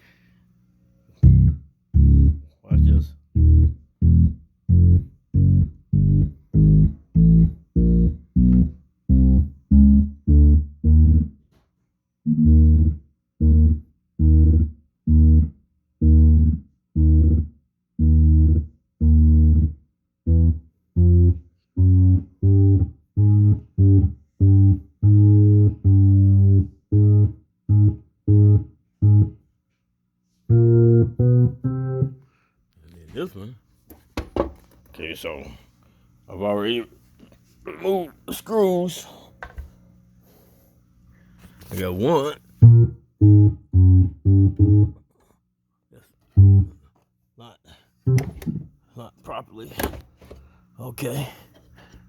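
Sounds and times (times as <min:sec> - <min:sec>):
low organ bass notes: 0:01.2 - 0:11.5, 0:12.2 - 0:29.5, 0:30.5 - 0:32.2, 0:41.8 - 0:45.0, 0:46.3 - 0:46.8.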